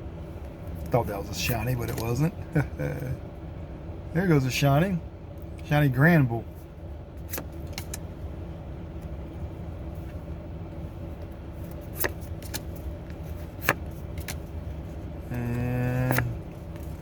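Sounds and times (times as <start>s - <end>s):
trading cards clicking: 15.3s - 17.0s.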